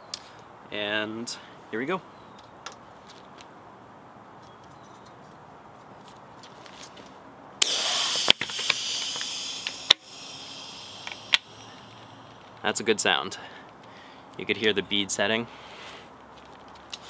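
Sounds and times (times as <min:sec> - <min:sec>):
tire bead popping onto rim: 0:07.6 - 0:10.2, 0:10.9 - 0:12.6
inflator hissing: 0:07.6 - 0:12.5.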